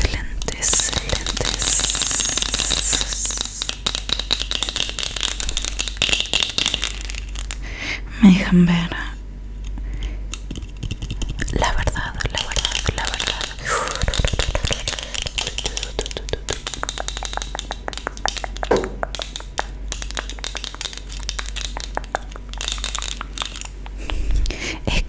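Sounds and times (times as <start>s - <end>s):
mouth clicks and pops: 0.0s - 7.6s, 12.3s - 23.4s.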